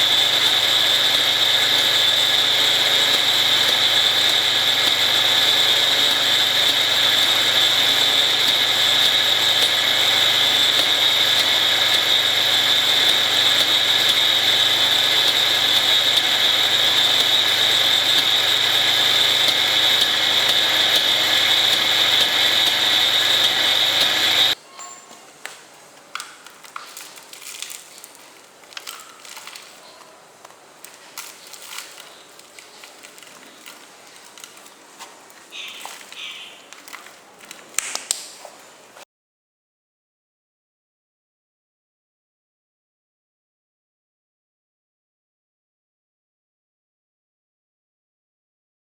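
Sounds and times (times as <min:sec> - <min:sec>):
angle grinders whining: 0:00.0 - 0:24.6
faint crackles and clicks: 0:25.4 - 0:38.8.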